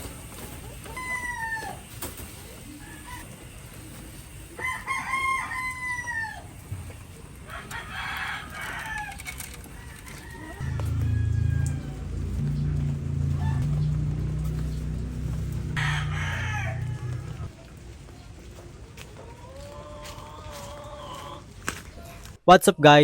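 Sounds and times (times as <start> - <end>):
rooster crowing: 4.5 - 6.6, 7.4 - 17.5
loud low droning: 10.6 - 17.6.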